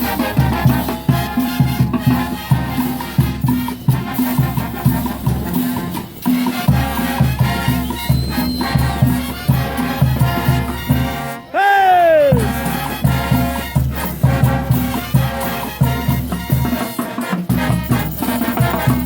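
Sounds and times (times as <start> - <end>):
brass band music: 0.0 - 8.0, 8.9 - 11.6, 12.2 - 19.0.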